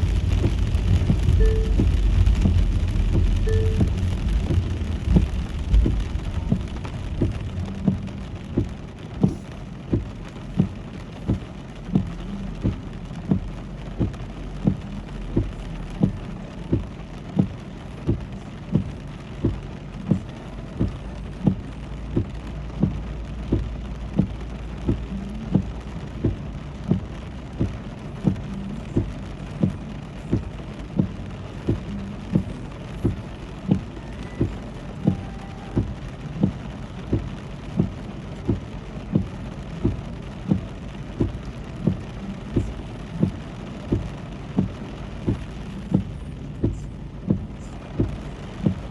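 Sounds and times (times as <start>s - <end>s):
car road noise: 0.0s - 48.9s
rain: 0.0s - 48.9s
regular low thump: 0.0s - 48.9s.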